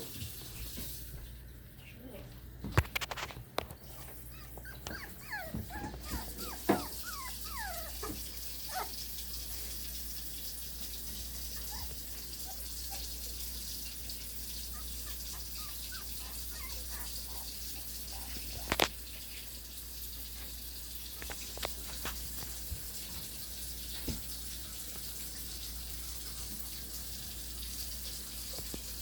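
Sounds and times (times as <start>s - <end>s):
puppies whimpering and squealing: 3.7s - 9.1s, 11.6s - 13.2s, 14.6s - 18.9s.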